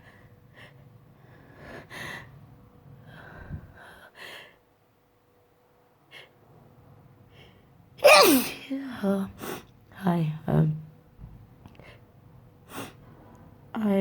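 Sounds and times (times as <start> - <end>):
person sneezing: 8.0 - 8.6.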